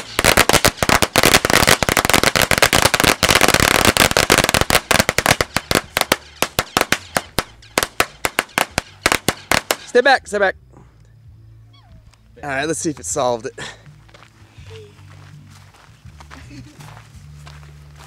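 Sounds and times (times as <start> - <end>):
firecrackers banging: 0.0 - 10.2.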